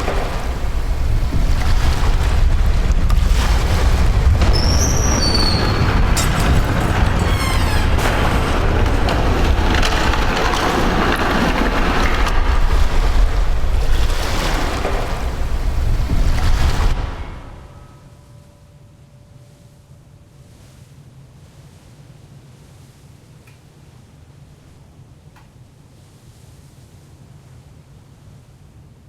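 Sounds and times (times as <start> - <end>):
steel hull scraping ice: 0.0 - 18.2
short high squeals: 4.4 - 9.0.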